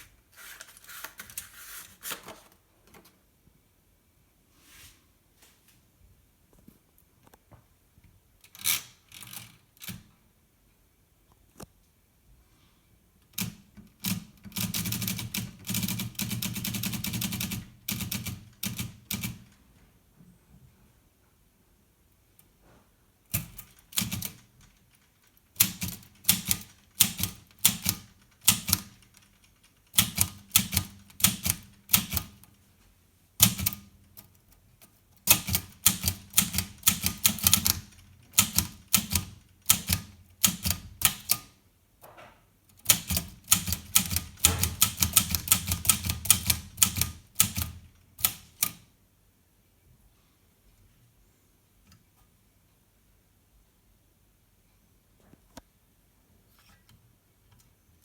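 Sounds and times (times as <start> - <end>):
manual typewriter typing: 8.5 - 10.1, 13.3 - 19.6, 23.3 - 32.6, 33.4 - 34.5, 35.2 - 41.6, 42.7 - 48.9.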